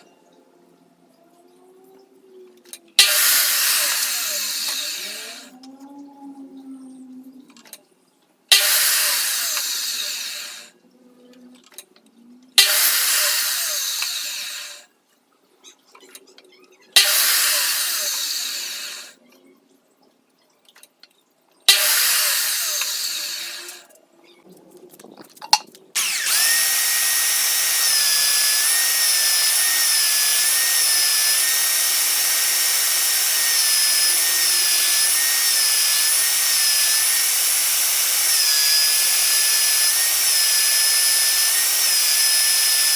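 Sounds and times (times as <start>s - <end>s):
electric power tool whining: 3.0s - 5.6s, 8.5s - 10.7s, 12.6s - 14.9s, 17.0s - 19.2s, 21.7s - 23.9s, 26.0s - 42.9s.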